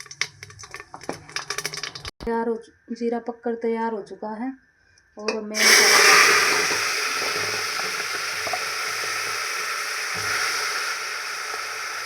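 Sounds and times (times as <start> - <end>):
masala paste sizzling in hot oil: 0.0 - 2.1, 5.6 - 12.0.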